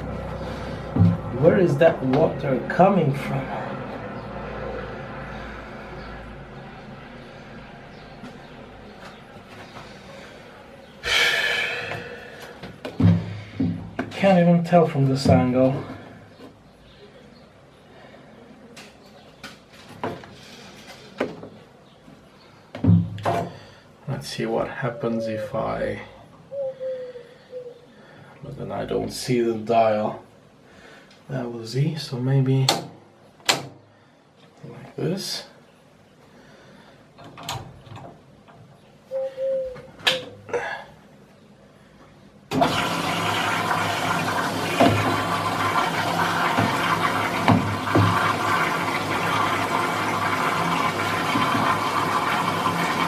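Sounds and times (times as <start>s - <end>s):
dull thump: 1.0s - 1.3s, 12.9s - 14.1s
water rushing into machine: 42.5s - 53.0s.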